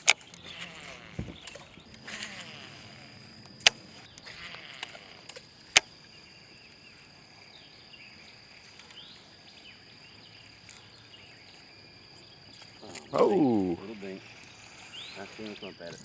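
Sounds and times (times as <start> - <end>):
sharp clicks: 3.4 - 5.9
high-pitched drone: 12.9 - 14.3.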